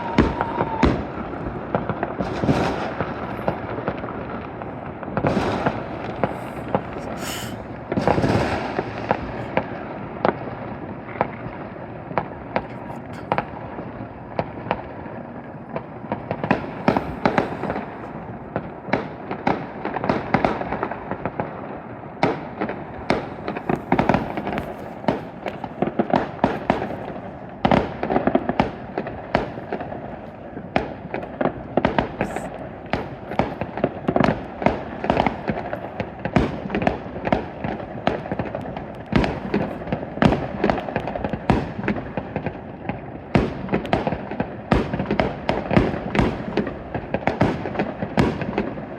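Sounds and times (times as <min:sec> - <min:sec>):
fireworks bangs and crackles: 0:00.0 - 0:48.9.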